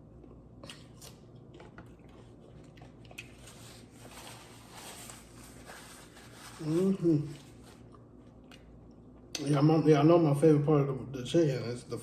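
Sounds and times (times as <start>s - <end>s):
person chewing food: 0.0s - 5.1s, 7.5s - 9.4s.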